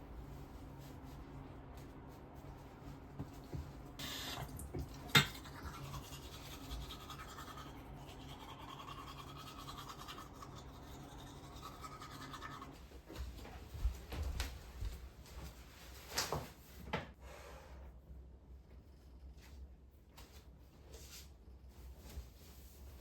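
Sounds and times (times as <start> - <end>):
toothbrush scrubbing: 5.0 - 12.8.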